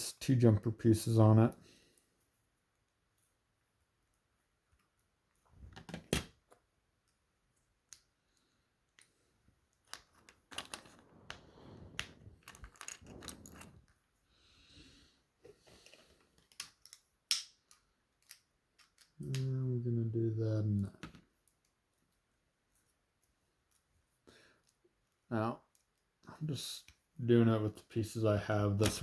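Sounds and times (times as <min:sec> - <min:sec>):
plastic lego pieces clicking: 0:16.4 - 0:19.5.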